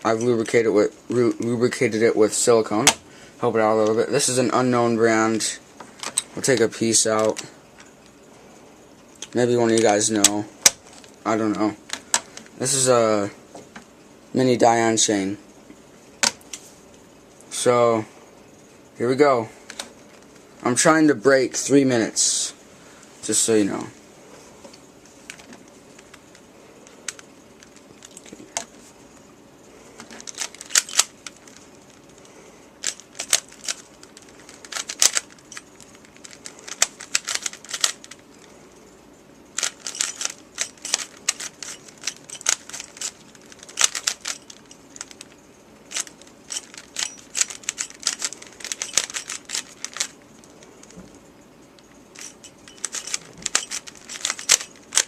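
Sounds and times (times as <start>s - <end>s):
puzzle cube clicking: 30.2s - 31.6s, 32.8s - 38.2s, 39.6s - 51.0s, 52.1s - 55.0s.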